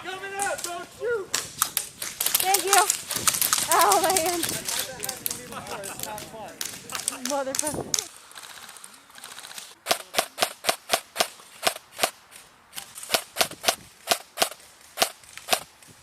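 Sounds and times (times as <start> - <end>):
airsoft gun shots: 9.8 - 12.2, 13.1 - 15.7.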